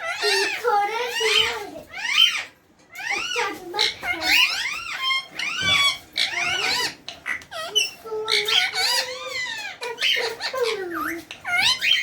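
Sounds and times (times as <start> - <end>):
parrot squawking and whistling: 0.0 - 12.0.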